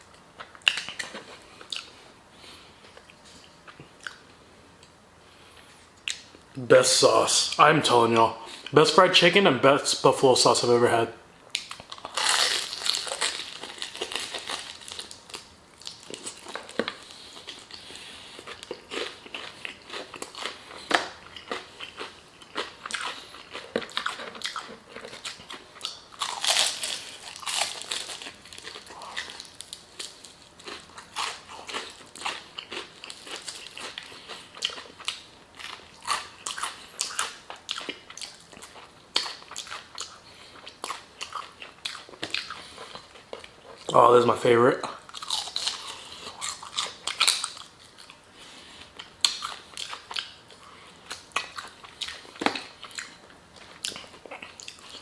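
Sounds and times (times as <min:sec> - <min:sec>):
chewing: 0:00.1 - 0:02.0, 0:11.5 - 0:43.9, 0:44.8 - 0:55.0
crunching fried chicken: 0:11.6 - 0:44.0, 0:44.8 - 0:55.0.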